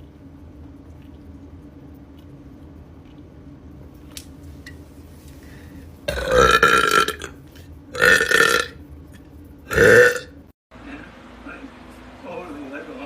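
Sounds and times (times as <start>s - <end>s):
woman burping: 6.1s - 7.3s, 8.0s - 8.8s, 9.7s - 10.3s.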